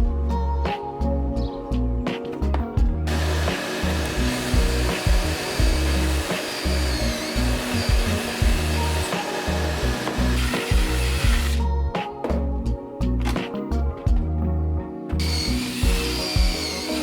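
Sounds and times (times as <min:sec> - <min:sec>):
background music with bass line: 0:00.0 - 0:17.0
power saw cutting plywood: 0:03.1 - 0:11.6, 0:15.2 - 0:17.0.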